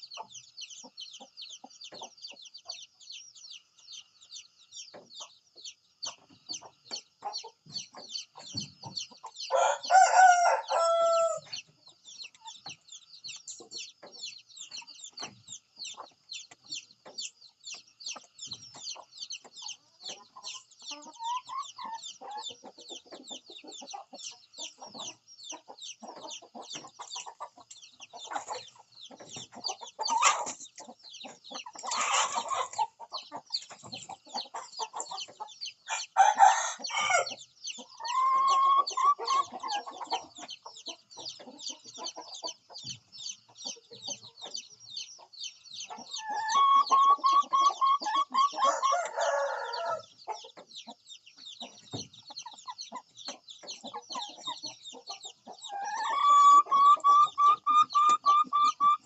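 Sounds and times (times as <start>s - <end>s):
rooster crowing: 9.5s - 11.5s, 36.2s - 37.3s, 48.5s - 50.0s
rapid high chirping: 36.8s - 59.0s.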